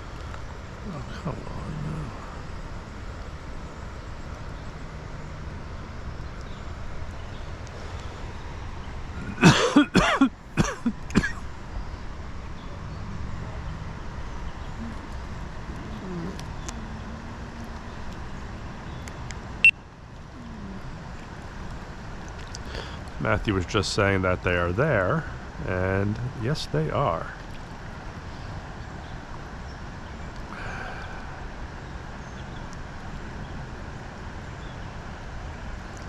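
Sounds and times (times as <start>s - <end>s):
outdoor background hiss: 0.0s - 36.0s
person coughing: 9.2s - 11.4s.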